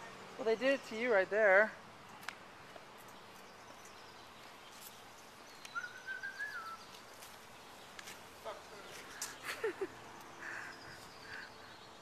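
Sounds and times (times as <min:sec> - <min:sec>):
faint outdoor ambience: 0:00.0 - 0:12.0
whistled bird note: 0:05.6 - 0:06.9.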